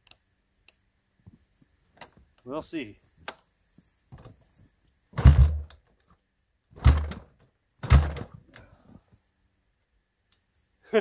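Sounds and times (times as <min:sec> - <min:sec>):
engine turning over with heavy thud: 0:05.2 - 0:05.7, 0:06.8 - 0:08.4
kick-starter kicks: 0:05.2 - 0:05.7, 0:06.8 - 0:08.3.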